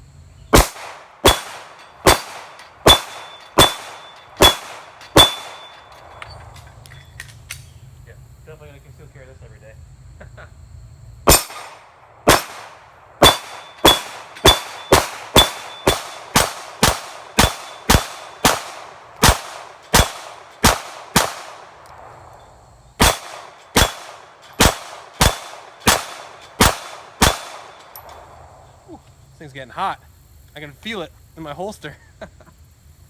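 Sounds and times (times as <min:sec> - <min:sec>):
pistol shots: 0:00.5 - 0:06.2, 0:11.3 - 0:22.4, 0:23.0 - 0:28.4
metallic ring: 0:01.7 - 0:07.8, 0:13.2 - 0:16.3.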